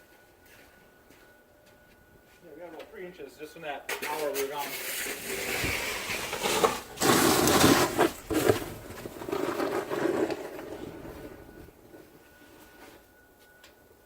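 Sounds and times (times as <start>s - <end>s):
snow shovel scraping snow: 4.0s - 11.7s.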